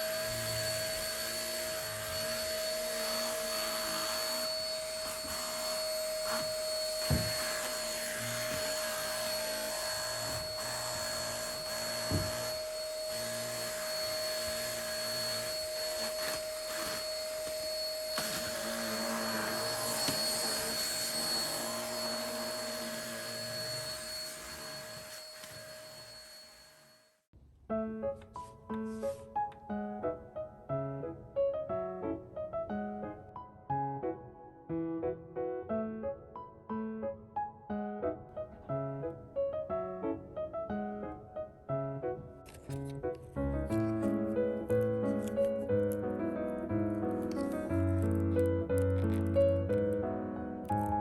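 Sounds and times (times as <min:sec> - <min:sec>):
vacuum cleaner running: 0:00.0 - 0:27.0.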